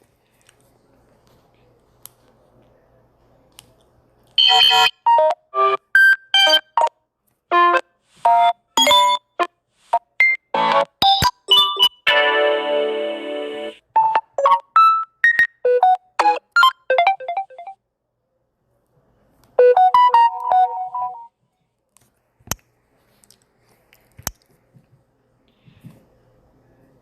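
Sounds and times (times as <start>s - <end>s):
phone ringtone synth melody: 4.4s - 6.9s, 7.5s - 9.4s, 10.2s - 17.8s, 19.6s - 21.3s.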